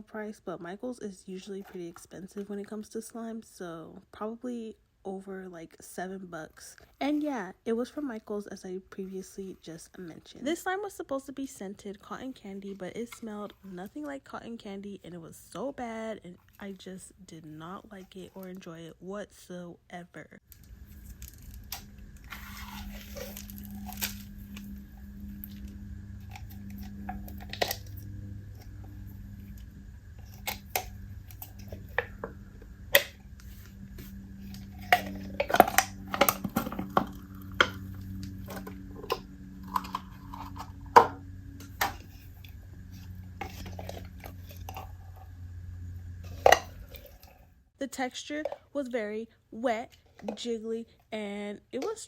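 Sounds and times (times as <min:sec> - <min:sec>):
low hum: 0:20.4 - 0:47.8.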